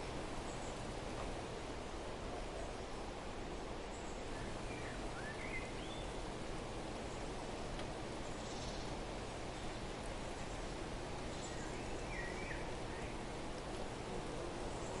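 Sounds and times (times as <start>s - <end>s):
outdoor background noise: 0.0s - 15.0s
small songbird chirping: 3.9s - 6.3s, 8.2s - 13.3s.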